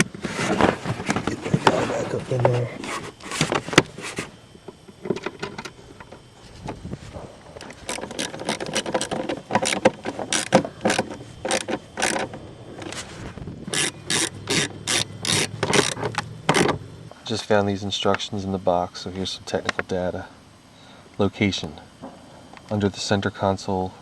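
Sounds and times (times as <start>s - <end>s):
plastic trim clicking and rattling: 7.6s - 12.4s, 13.7s - 16.8s.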